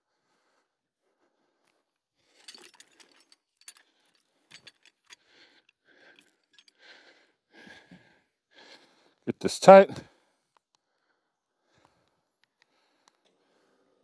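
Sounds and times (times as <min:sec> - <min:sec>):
winch hook and rigging clinking: 0:02.4 - 0:06.8.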